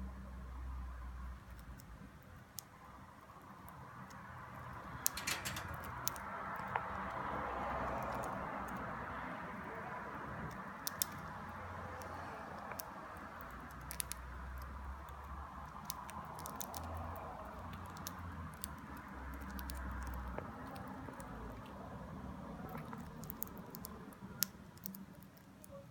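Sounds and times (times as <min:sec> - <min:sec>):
budgerigar pecking and nibbling: 0:10.4 - 0:21.8.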